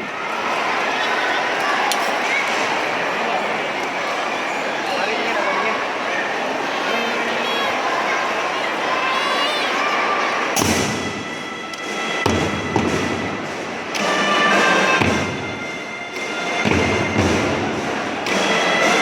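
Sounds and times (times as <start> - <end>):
heavy drum strikes: 10.6 - 19.0.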